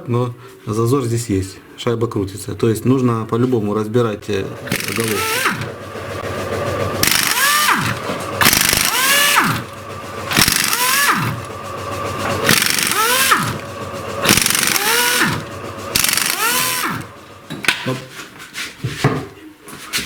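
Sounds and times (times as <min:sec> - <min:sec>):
power tool whining: 0:04.5 - 0:17.6.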